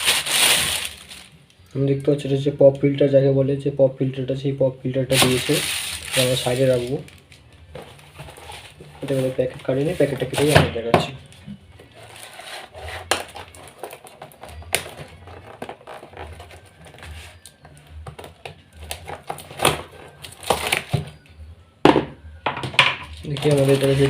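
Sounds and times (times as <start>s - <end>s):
packaging rustling and crinkling: 0.0s - 1.6s, 5.1s - 21.3s, 23.1s - 24.0s.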